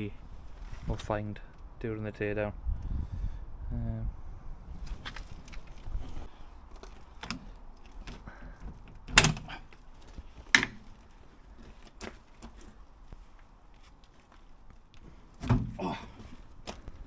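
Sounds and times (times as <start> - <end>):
metal clicks and knocks: 6.8 - 9.6, 10.4 - 11.0.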